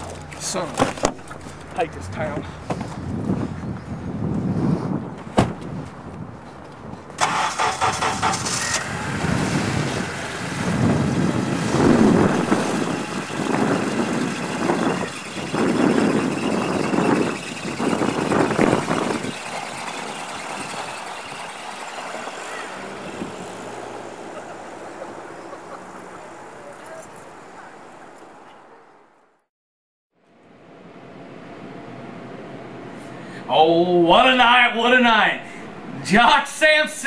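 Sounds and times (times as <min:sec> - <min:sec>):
car engine starting and revving: 0:07.2 - 0:25.5.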